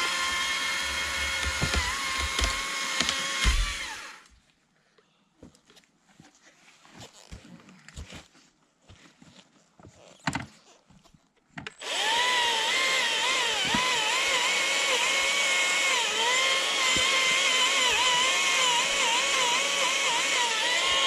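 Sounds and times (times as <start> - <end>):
battery chainsaw cutting wood: 0.0 - 4.3, 11.8 - 21.0.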